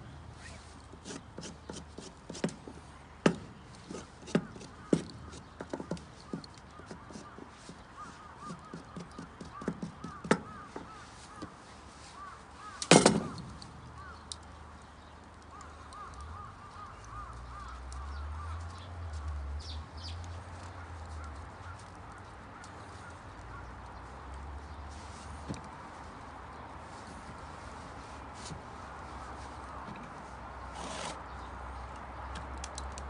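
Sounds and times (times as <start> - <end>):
sharp knocks: 12.8 - 13.4.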